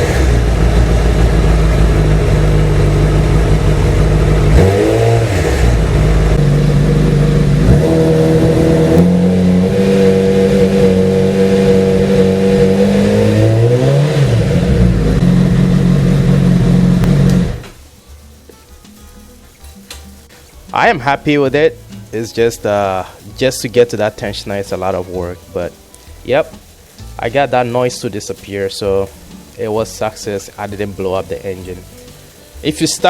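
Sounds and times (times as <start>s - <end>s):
motorcycle engine revving: 0.0s - 17.8s.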